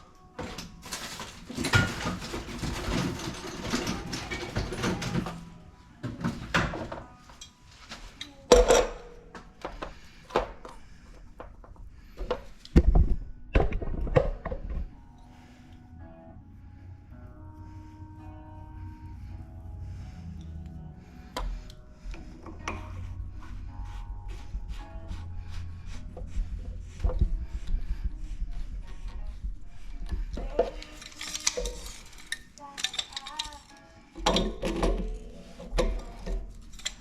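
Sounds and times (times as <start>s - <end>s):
scraping and rustling: 0.4s - 8.2s.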